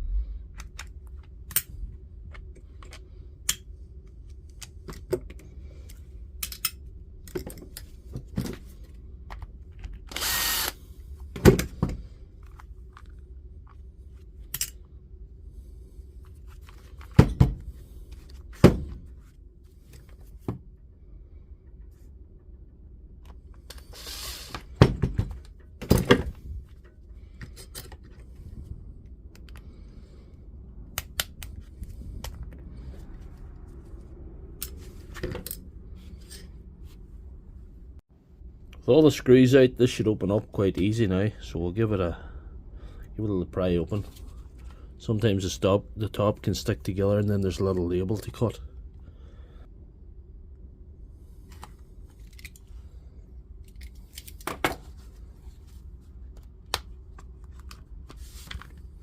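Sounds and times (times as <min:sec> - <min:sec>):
clicks and knocks of tools: 0:00.6 - 0:07.9, 0:14.5 - 0:14.8
power screwdriver running: 0:10.1 - 0:10.8.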